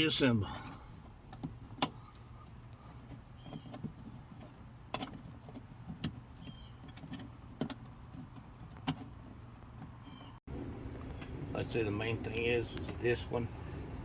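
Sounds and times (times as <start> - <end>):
steady low hum: 10.5 - 14.0.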